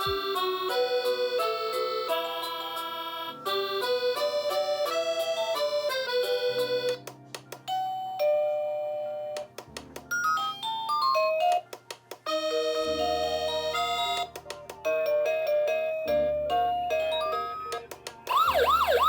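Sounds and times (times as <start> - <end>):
electronic alarm clock melodies: 0.0 - 7.0, 12.2 - 14.3, 15.2 - 19.0.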